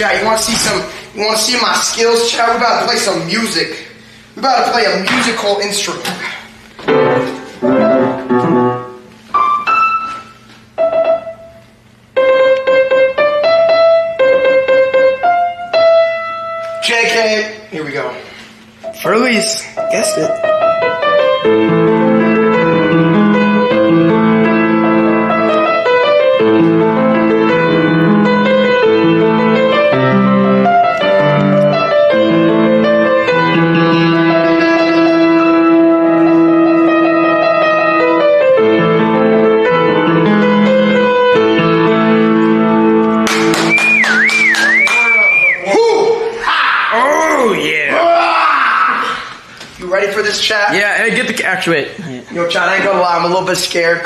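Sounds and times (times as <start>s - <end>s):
keyboard played by hand: 6.8s - 16.8s, 19.8s - 45.0s
piano chords and melody: 6.8s - 17.3s, 18.8s - 44.8s.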